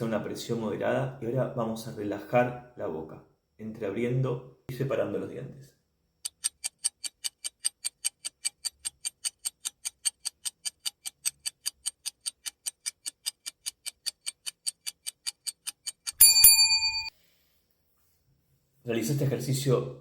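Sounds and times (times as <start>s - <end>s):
timer ticking: 6.2s - 17.1s
bright ringing chime: 16.2s - 17.1s.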